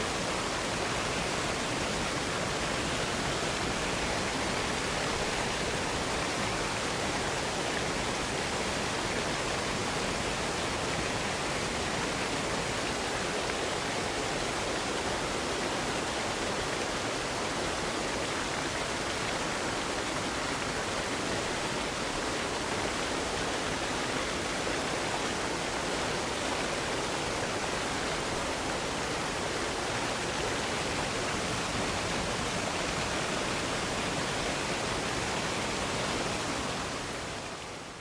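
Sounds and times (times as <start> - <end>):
waterfall rushing: 0.0 - 38.0.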